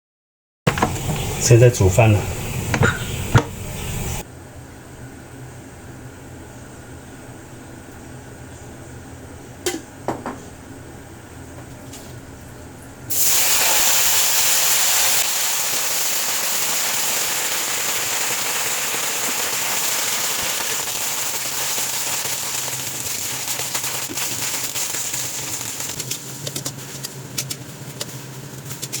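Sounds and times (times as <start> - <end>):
food sizzling in a frying pan: 13.1 - 27.1
crackles and pops: 15.2 - 29.0.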